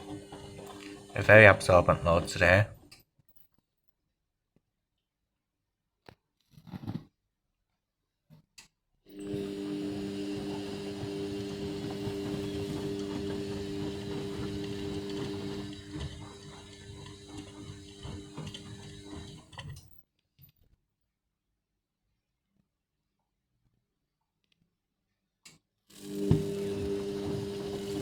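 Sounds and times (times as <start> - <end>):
washing machine whirring: 0.0 - 2.7, 9.1 - 19.9, 25.9 - 28.0.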